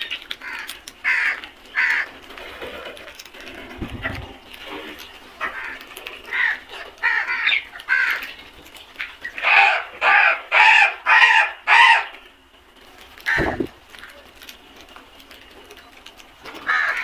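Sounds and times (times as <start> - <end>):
crows cawing: 0.4 - 2.1, 5.4 - 8.3, 9.4 - 12.2, 13.3 - 13.7, 16.6 - 17.0.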